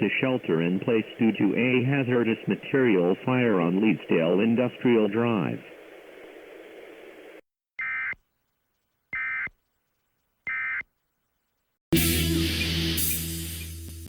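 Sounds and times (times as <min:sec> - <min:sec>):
faint hiss: 0:00.0 - 0:07.4
music: 0:11.9 - 0:14.0.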